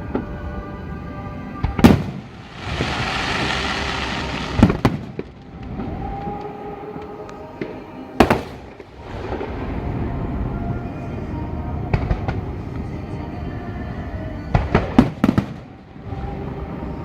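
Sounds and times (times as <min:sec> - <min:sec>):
fireworks bangs: 0:01.8 - 0:06.4, 0:08.2 - 0:09.7
hissing crackle: 0:01.9 - 0:06.4.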